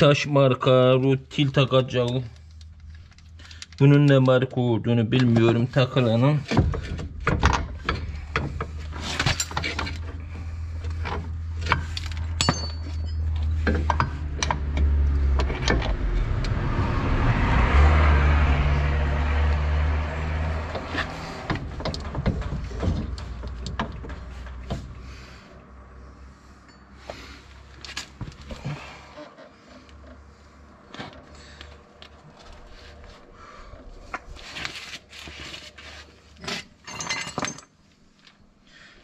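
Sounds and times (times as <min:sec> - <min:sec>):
engine running with low hum: 0:06.6 - 0:36.0
metal tools clicking and knocking: 0:11.1 - 0:15.8.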